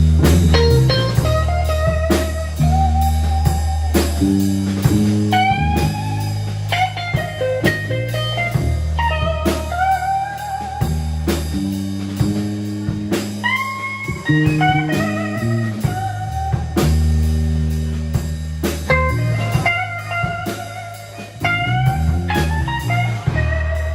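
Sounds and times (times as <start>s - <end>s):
drum kit: 0.0s - 23.9s
electric bass notes: 0.0s - 23.9s
electric guitar lead: 0.0s - 23.9s.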